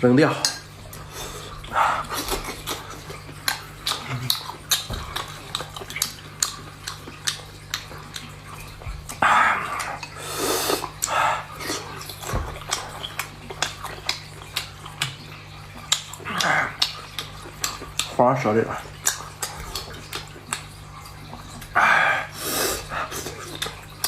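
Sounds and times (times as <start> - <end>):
chewing and sucking: 0.4 - 24.0
loud sucking slurp: 9.5 - 12.0, 22.2 - 23.4.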